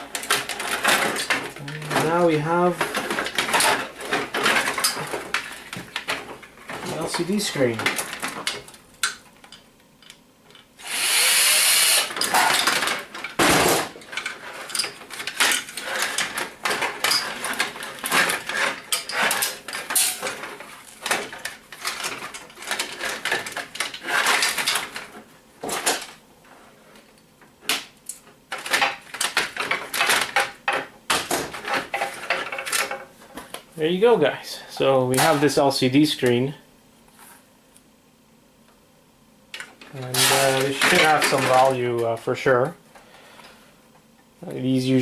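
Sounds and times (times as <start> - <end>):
plastic and metal parts rattling: 0.0 - 10.7, 12.1 - 27.1, 27.7 - 33.6, 39.6 - 41.8
power drill running: 10.8 - 12.5.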